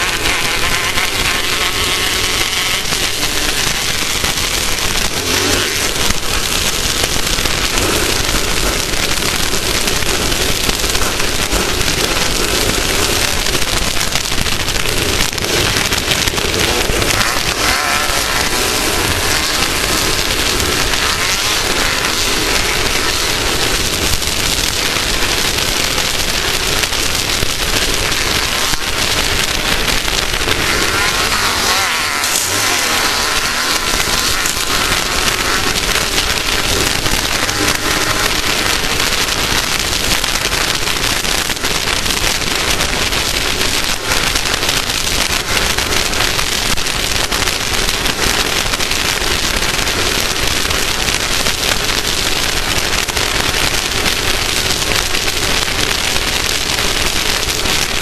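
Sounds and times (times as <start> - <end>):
engine revving up and down: 0.0 - 47.4
loud steady rushing: 0.0 - 58.0.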